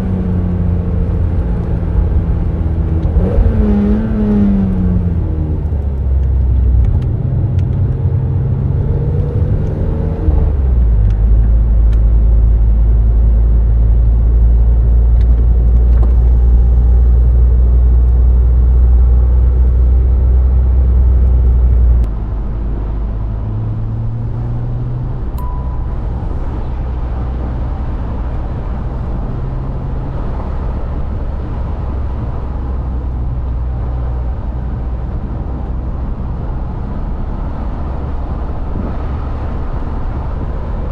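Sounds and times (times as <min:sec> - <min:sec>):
car engine droning while driving: 0:00.0 - 0:40.9.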